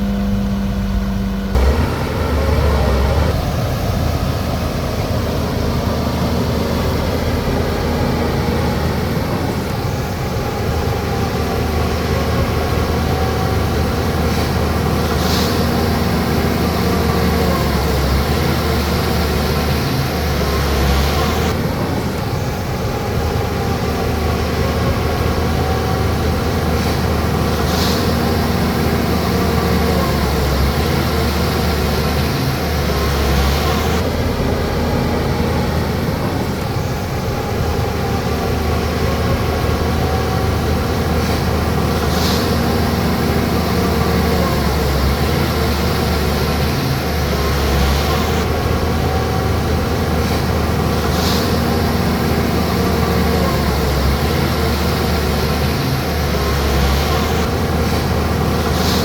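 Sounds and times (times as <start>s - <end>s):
bulldozer diesel engine running: 0.0s - 59.0s
short hiss: 15.1s - 15.8s, 26.8s - 28.3s, 41.2s - 43.1s, 51.0s - 52.0s.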